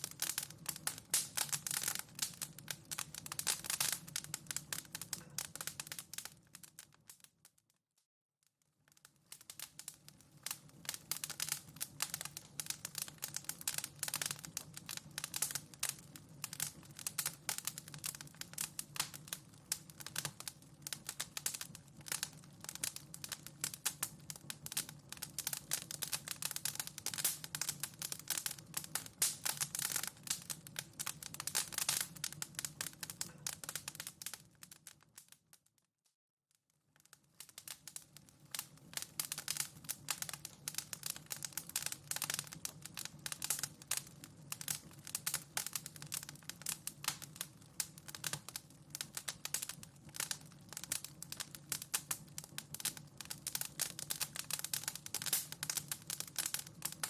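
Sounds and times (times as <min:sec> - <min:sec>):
wood fire crackling: 0:00.0 - 0:07.7, 0:08.8 - 0:35.7, 0:36.9 - 0:57.0.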